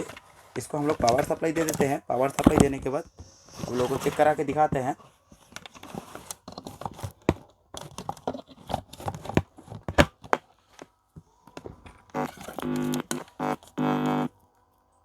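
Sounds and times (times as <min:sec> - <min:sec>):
power cable clicks and rustling: 0:11.5 - 0:14.2
short electronic tone: 0:12.2 - 0:14.3.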